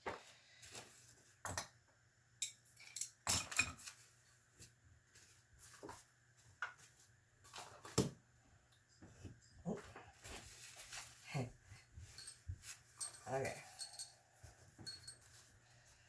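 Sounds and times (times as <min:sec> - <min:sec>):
metal tools clinking: 0:02.4 - 0:03.9, 0:12.0 - 0:15.5.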